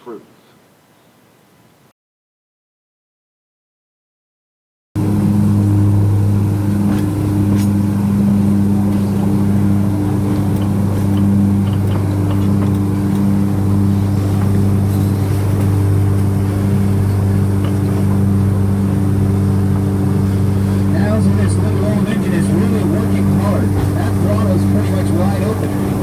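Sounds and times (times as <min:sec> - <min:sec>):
train engine humming: 0:05.0 - 0:26.0.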